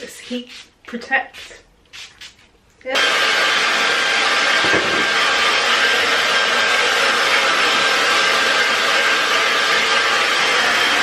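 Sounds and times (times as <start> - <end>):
hair dryer running: 2.9 - 11.0.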